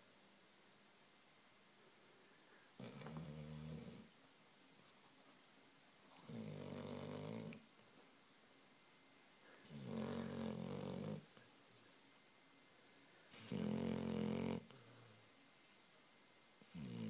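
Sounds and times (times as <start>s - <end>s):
dog snoring: 2.8s - 4.1s, 6.2s - 7.6s, 9.6s - 11.4s, 13.3s - 15.2s, 16.6s - 17.0s.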